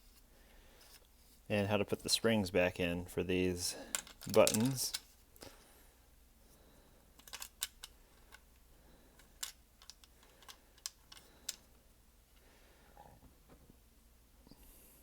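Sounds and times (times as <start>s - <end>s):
plastic parts clicking: 3.9s - 5.1s, 7.2s - 8.4s, 9.2s - 11.7s.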